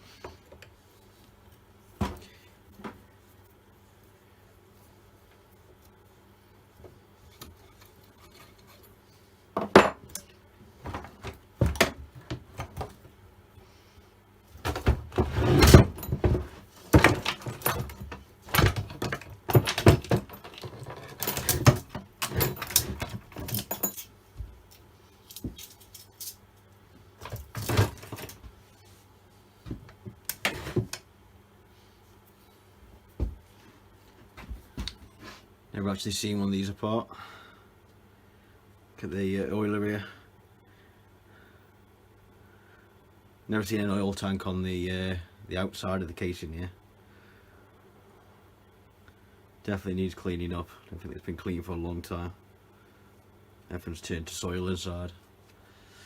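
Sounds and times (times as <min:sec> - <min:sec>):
metal tools clinking and clattering: 0:14.7 - 0:24.1, 0:25.3 - 0:26.4.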